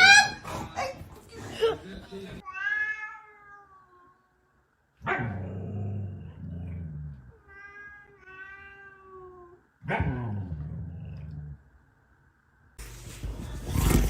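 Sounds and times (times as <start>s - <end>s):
dog barking and growling: 5.0s - 7.1s, 9.8s - 11.4s.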